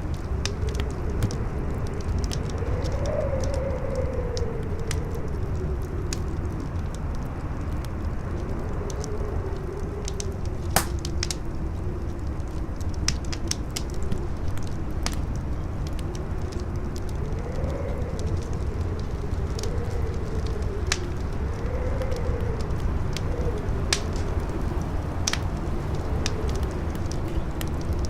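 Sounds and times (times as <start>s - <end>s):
howling wind: 0.0s - 28.0s
wood fire crackling: 0.0s - 28.0s
fire loud pop: 10.8s - 11.1s.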